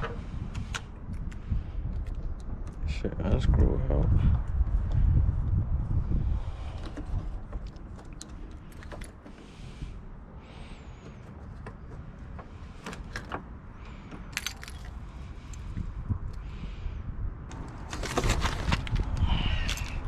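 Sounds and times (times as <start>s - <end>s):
hand tools clicking and rattling: 14.0s - 15.6s.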